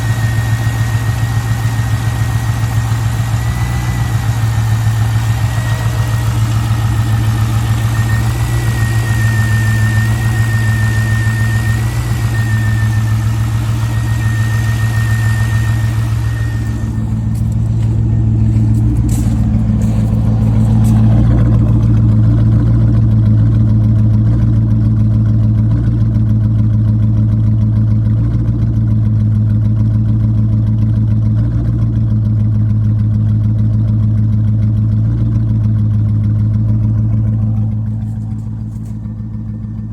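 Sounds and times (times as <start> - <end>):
high steady whine: 0.0 - 23.2, 36.6 - 39.9
car engine idling: 0.0 - 39.9.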